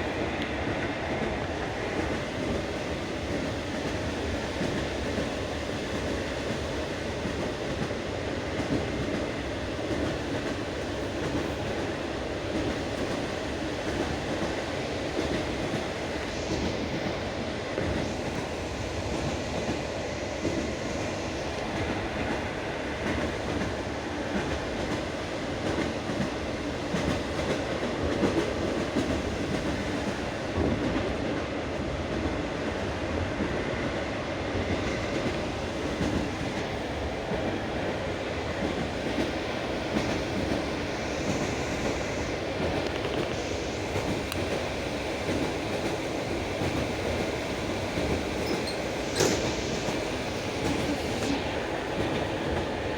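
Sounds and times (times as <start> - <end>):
train wheels clattering over rail joints: 48.0 - 51.2.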